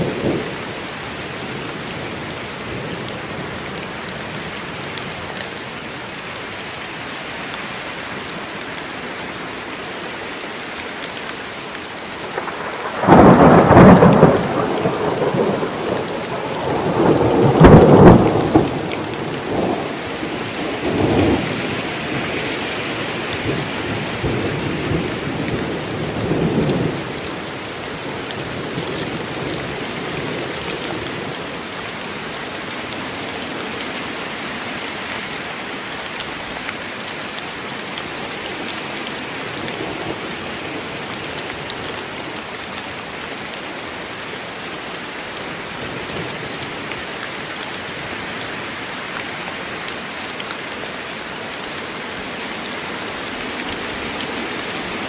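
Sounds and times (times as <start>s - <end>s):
heavy rain falling: 0.0s - 55.0s
thunder crashing and rumbling: 12.3s - 19.8s.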